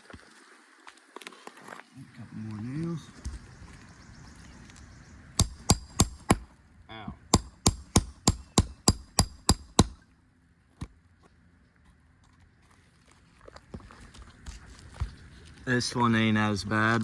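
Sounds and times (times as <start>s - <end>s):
hammer striking metal: 5.4s - 6.4s, 7.3s - 10.0s.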